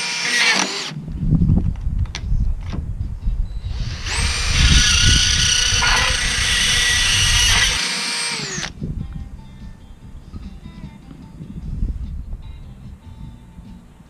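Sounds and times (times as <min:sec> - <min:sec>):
power grinder whining: 0:00.0 - 0:01.0, 0:03.7 - 0:08.7
low knocks and rumble: 0:01.0 - 0:07.8.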